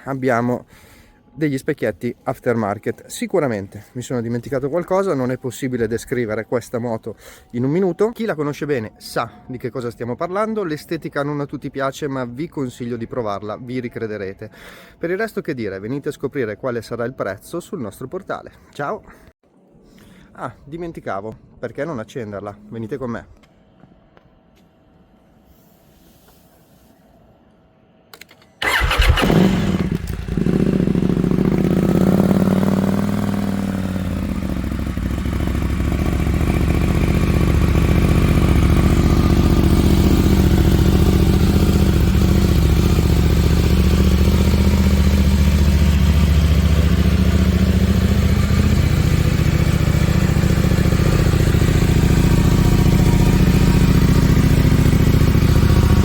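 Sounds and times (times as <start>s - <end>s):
motorcycle engine idling: 28.6s - 56.0s.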